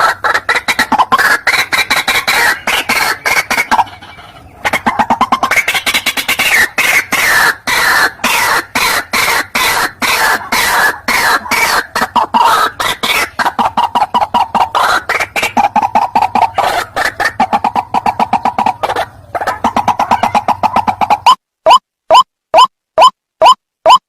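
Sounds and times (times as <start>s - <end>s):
waterhen harsh croaking calls: 0.0s - 24.0s.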